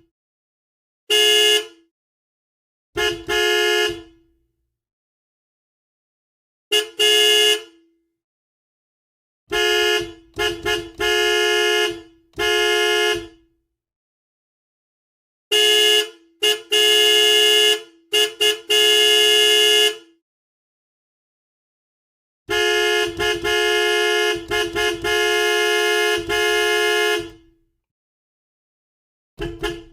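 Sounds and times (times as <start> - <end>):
car horn honking: 1.1 - 1.9, 3.0 - 4.3, 6.7 - 7.9, 9.5 - 13.5, 15.5 - 20.2, 22.5 - 27.6, 29.4 - 29.9.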